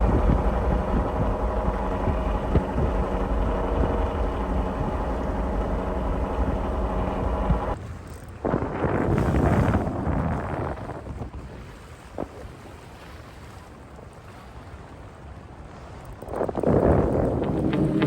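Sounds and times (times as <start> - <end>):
vehicle engine rumbling: 0.0 - 7.8, 17.3 - 18.0.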